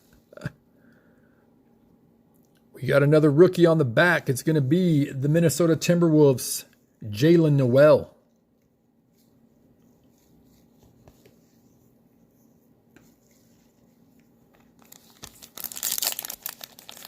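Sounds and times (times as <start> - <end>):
card pack wrapper tearing: 14.7 - 17.0.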